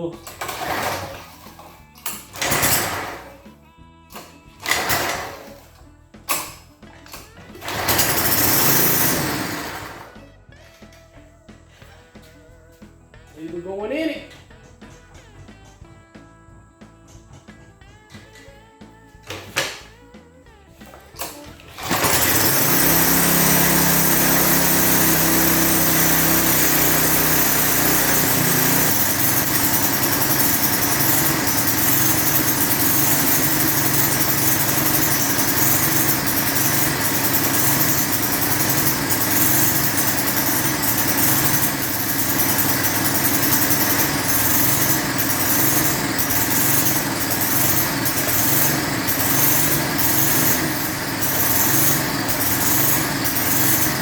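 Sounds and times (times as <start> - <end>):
lawn edger engine running: 0.0 - 3.4, 4.6 - 5.7, 7.5 - 10.2, 21.6 - 54.0.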